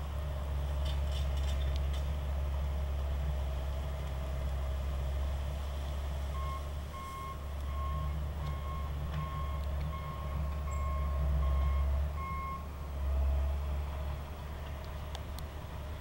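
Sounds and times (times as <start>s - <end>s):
diesel engine running: 0.0s - 16.0s
reverse alarm beeping: 6.4s - 12.6s.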